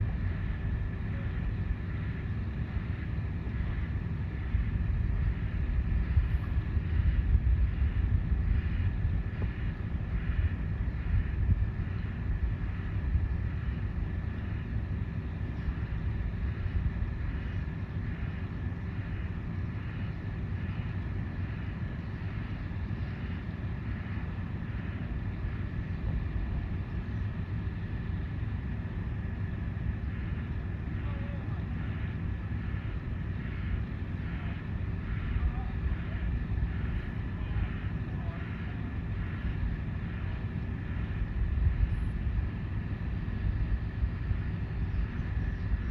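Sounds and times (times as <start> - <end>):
faint high whine: 0.0 - 45.9
machinery low rumble: 0.0 - 45.9
wind buffeting microphone: 0.0 - 45.9.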